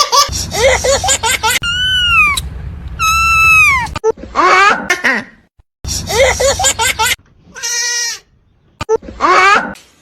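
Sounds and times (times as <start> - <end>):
goat bleating: 7.5 - 8.3.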